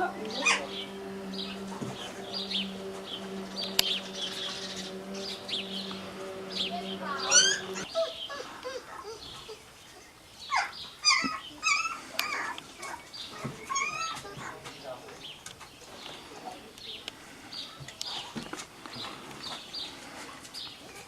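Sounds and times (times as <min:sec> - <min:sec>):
puppies whining and squeaking: 0:00.0 - 0:05.8, 0:06.7 - 0:09.7, 0:10.5 - 0:14.6
steady low hum: 0:00.0 - 0:07.9.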